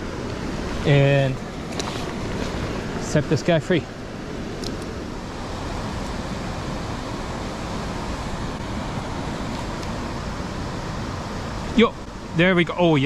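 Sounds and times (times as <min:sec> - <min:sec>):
rushing outdoor background noise: 0:00.0 - 0:13.0.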